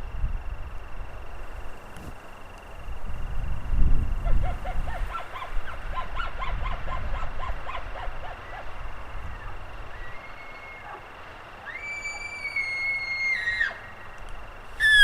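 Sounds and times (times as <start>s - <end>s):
faint high whistle: 9.9s - 10.9s, 11.6s - 13.9s, 14.8s - 15.0s
geese honking: 14.7s - 15.0s.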